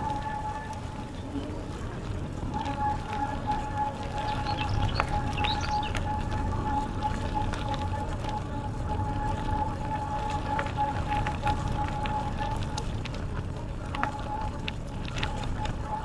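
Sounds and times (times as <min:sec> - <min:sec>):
bicycle tyres rumbling: 0:00.0 - 0:16.0
sharp ticks and clicks: 0:04.2 - 0:08.4.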